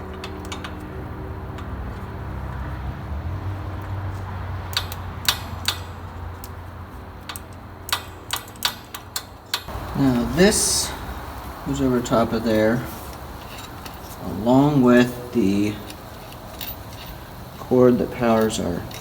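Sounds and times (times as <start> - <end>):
metallic clicks of hand tools: 4.7 - 6.6, 7.2 - 9.7.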